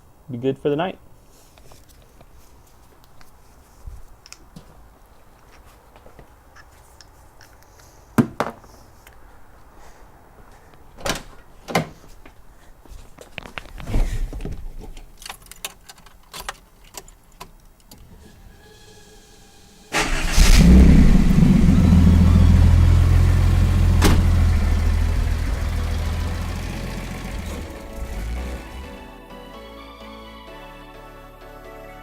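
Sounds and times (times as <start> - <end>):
car engine starting and idling: 18.0 - 29.2.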